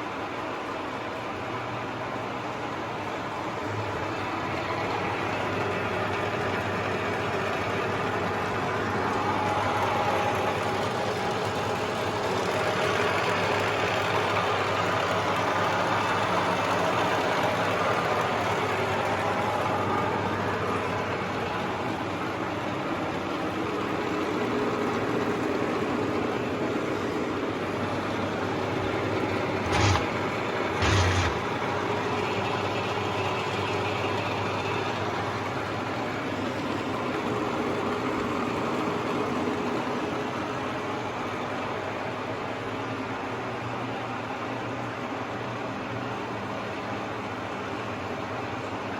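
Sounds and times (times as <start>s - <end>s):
milling machine humming: 17.0s - 36.8s.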